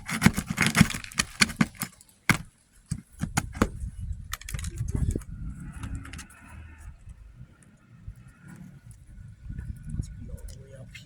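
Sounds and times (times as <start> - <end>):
metal tool clicking and scraping: 0.0 - 3.6.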